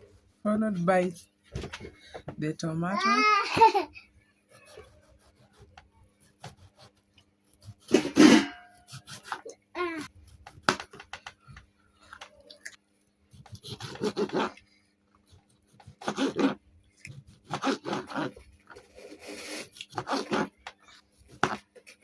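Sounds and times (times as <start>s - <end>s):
knife cutting tomato: 4.5s - 9.5s, 13.3s - 14.6s, 15.3s - 22.0s.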